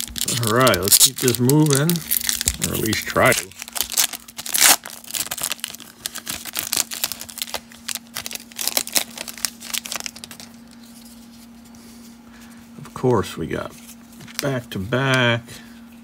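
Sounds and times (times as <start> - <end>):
card pack wrapper tearing and crinkling: 0.0 - 11.1.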